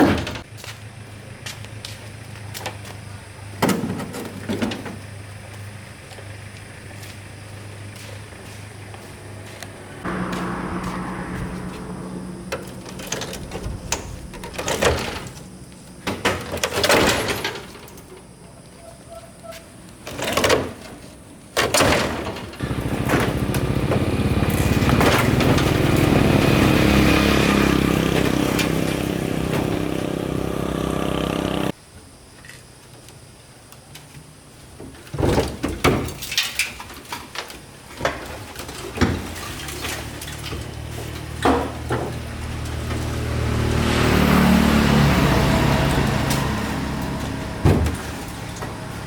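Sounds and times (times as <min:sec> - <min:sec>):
motor running: 0:22.6 - 0:31.7.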